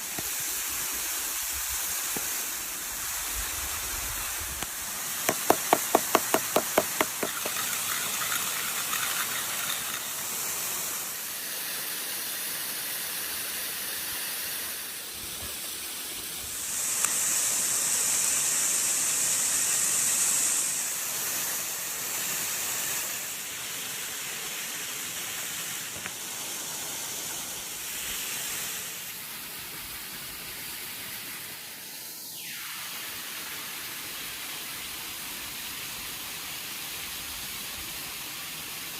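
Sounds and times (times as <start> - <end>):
burger sizzling on hot metal: 1.9 - 11.4
quick ticks: 5.3 - 10.2.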